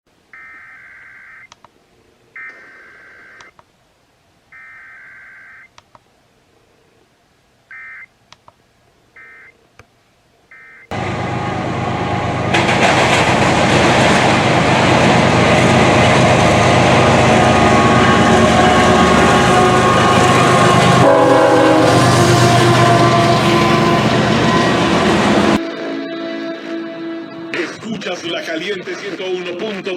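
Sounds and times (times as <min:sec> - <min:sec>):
radio music: 0:23.6 - 0:29.9.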